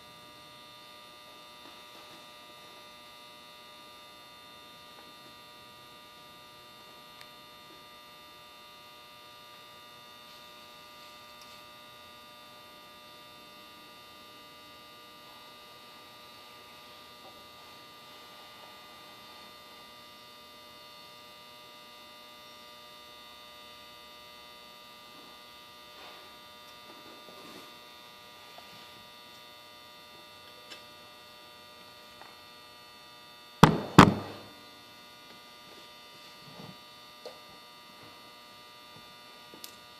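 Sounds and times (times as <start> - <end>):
electrical mains hum: 0.0 - 39.9
loud knocks: 33.6 - 34.5.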